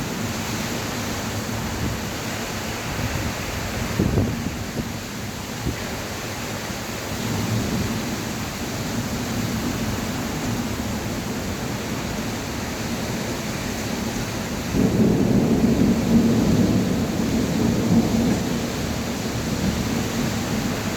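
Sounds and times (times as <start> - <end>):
heavy rain falling: 0.0 - 20.9.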